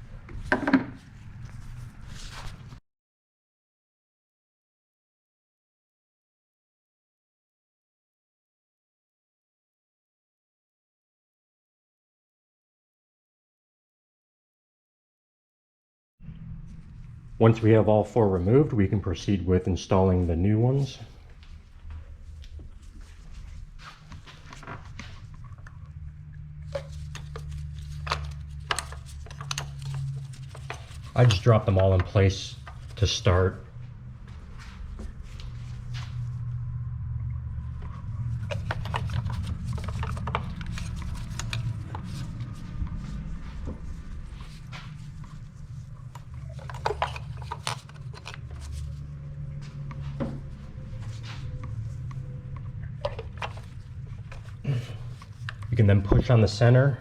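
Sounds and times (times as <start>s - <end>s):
steady low hum: 16.2s - 57.0s
plastic parts clicking and tapping: 26.7s - 31.3s, 38.5s - 42.2s, 46.1s - 48.8s, 53.0s - 53.7s.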